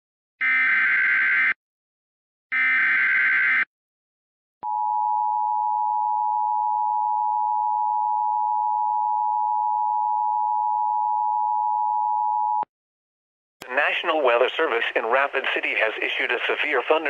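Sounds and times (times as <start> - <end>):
two-tone alert alarm: 0.4 - 1.6.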